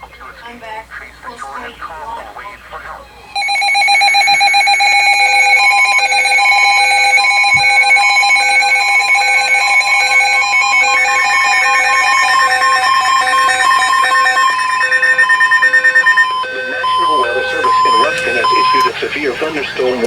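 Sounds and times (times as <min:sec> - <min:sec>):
two-tone alarm: 0:03.2 - 0:20.0
electronic beeps alternating in pitch: 0:03.3 - 0:20.0.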